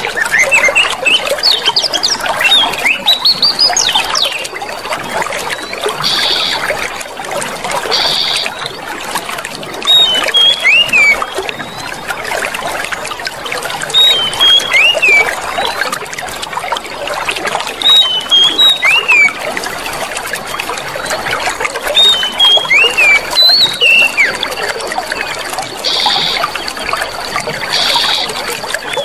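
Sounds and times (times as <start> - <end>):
songbird whistling: 0.0 - 4.5, 9.8 - 11.9, 13.9 - 15.8, 17.8 - 19.4, 21.9 - 29.0
water trickling and splashing: 0.0 - 29.0.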